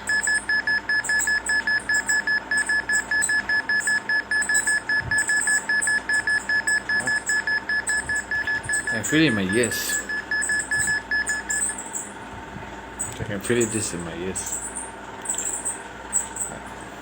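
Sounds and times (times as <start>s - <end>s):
rapid electronic beeping: 0.0s - 12.2s.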